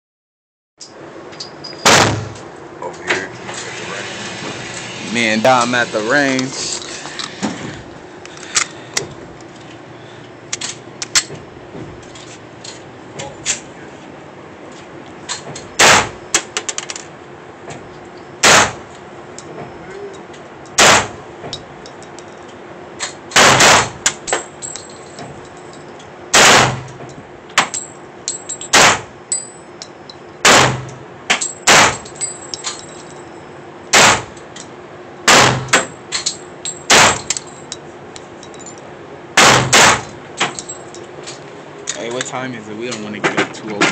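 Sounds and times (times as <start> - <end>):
pistol gunshots: 1.8 - 2.4, 15.8 - 16.2, 18.4 - 18.8, 20.8 - 21.2, 23.3 - 24.1, 26.3 - 26.9, 28.7 - 29.1, 30.4 - 30.9, 31.6 - 32.0, 33.9 - 34.3, 35.2 - 35.9, 36.9 - 37.3, 39.4 - 40.1.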